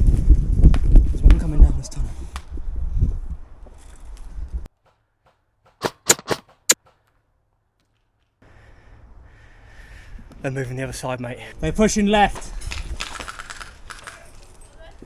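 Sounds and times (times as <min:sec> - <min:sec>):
rustle and rumble of gear: 0:00.0 - 0:04.7, 0:11.9 - 0:15.0
sharp clicks: 0:05.8 - 0:06.8.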